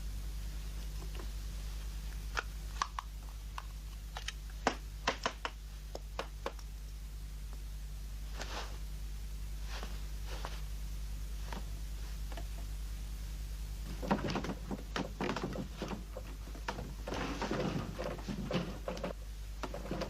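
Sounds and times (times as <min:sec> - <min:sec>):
low mains hum: 0:00.0 - 0:20.0
rustling swishes: 0:08.3 - 0:08.9, 0:09.5 - 0:12.3.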